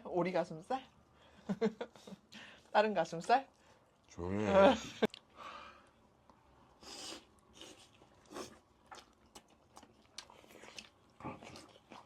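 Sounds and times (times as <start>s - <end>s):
chewing: 6.2s - 12.0s.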